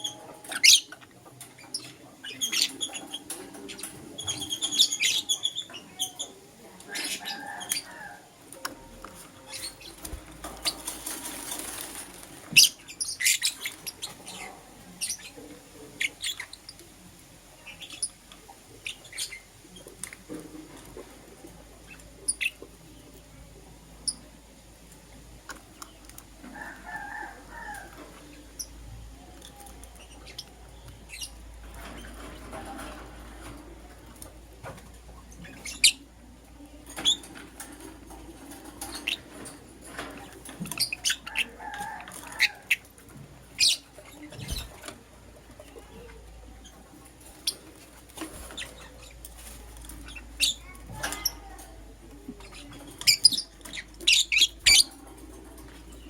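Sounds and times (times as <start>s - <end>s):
soft bird chattering: 0.0s - 8.2s, 12.5s - 16.9s, 17.6s - 20.2s, 35.3s - 36.3s, 43.5s - 44.8s, 45.6s - 51.6s, 52.3s - 55.1s
lovebirds chirping: 43.5s - 44.8s, 45.6s - 51.6s, 52.3s - 55.0s.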